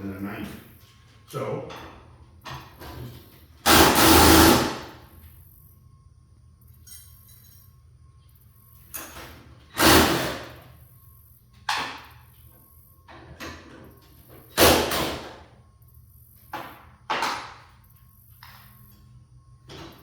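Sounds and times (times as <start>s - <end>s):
heavy bangs on garage door hardware: 9.8s - 10.6s.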